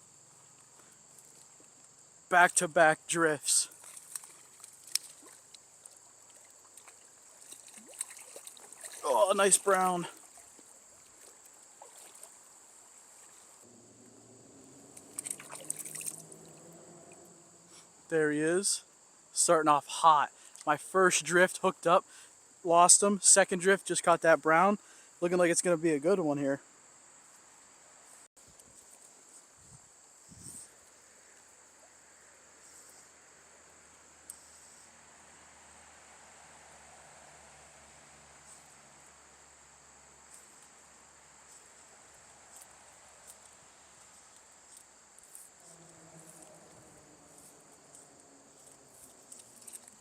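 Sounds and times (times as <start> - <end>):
insects droning: 0.0 - 50.0
flowing stream: 2.5 - 13.7, 14.4 - 18.6, 33.7 - 50.0
high-pitched insect drone: 13.7 - 18.0, 44.7 - 50.0.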